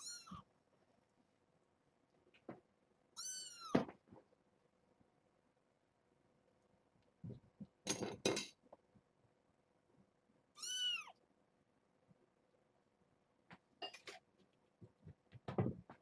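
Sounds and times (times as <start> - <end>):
clattering noises: 7.2 - 8.8, 13.5 - 16.0.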